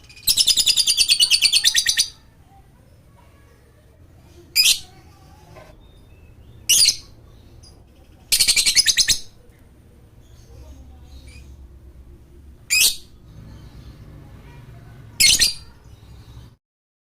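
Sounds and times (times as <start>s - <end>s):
lovebird chattering in shrill trills: 6.2s - 9.4s.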